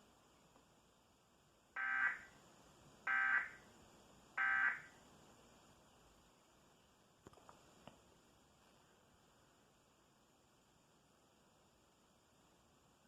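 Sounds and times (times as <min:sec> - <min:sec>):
short buzzing data bursts: 0:01.8 - 0:02.3, 0:03.1 - 0:03.6, 0:04.4 - 0:04.9.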